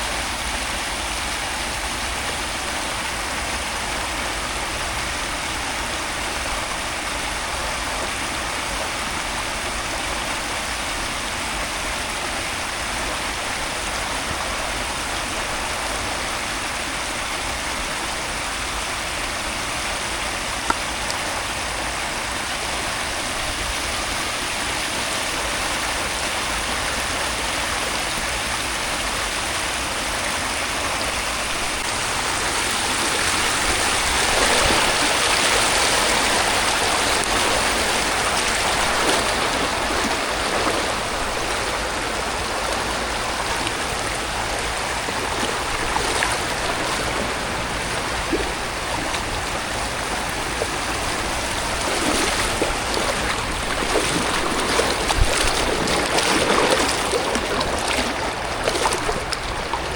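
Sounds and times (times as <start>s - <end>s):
running water: 0.0s - 59.9s
heavy rain: 30.7s - 59.9s.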